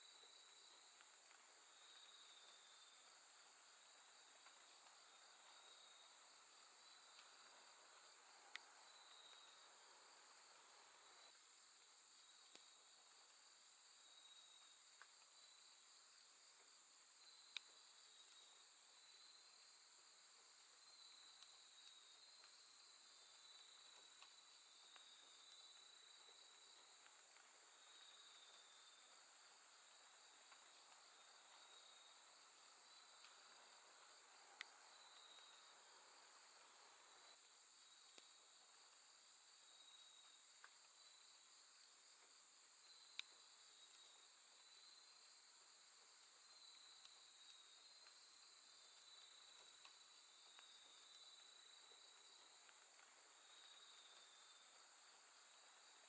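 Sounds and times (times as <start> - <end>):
crickets trilling: 20.4 - 56.0.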